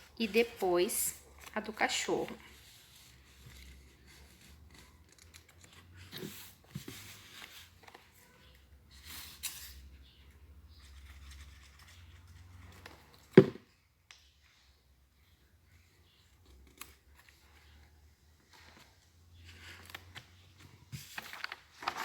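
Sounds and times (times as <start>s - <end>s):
paper rustling and scraping: 1.3s - 9.9s, 18.4s - 22.0s.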